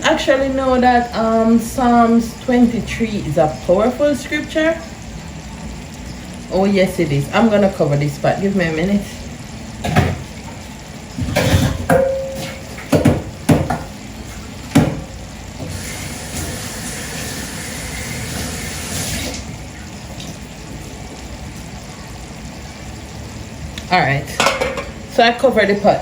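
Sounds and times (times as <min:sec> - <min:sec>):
water running from a tap: 0:00.0 - 0:26.0
pot lid clattering: 0:24.4 - 0:25.0.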